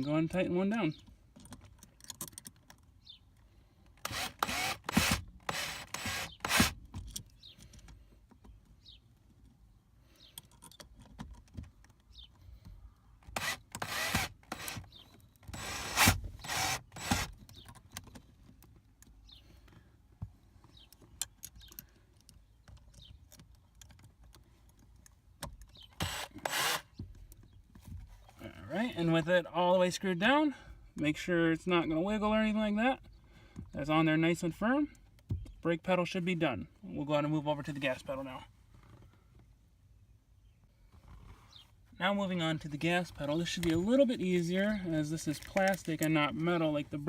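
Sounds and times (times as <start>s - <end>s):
power drill driving a bolt: 4.0s - 6.8s, 13.3s - 17.4s, 26.0s - 26.9s.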